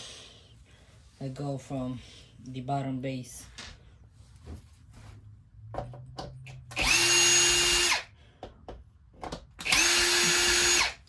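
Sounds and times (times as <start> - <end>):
cordless drill spinning: 6.7 - 8.2, 9.6 - 11.0.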